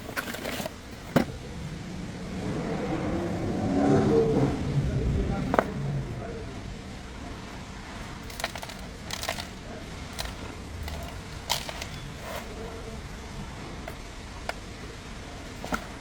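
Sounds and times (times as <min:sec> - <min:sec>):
low background hum: 0:00.0 - 0:16.0
sharp clicks and knocks: 0:08.2 - 0:12.4.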